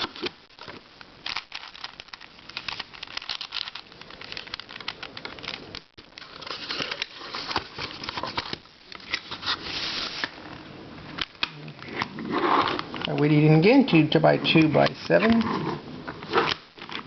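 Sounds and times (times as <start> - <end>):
plastic packaging crinkling: 0.0 - 10.5.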